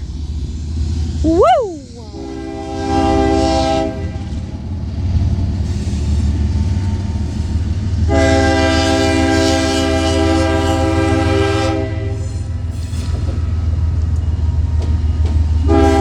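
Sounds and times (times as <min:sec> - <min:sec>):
train rumbling past: 0:00.0 - 0:16.0
locomotive air horn chord: 0:02.1 - 0:04.4, 0:08.1 - 0:12.5, 0:15.6 - 0:16.0.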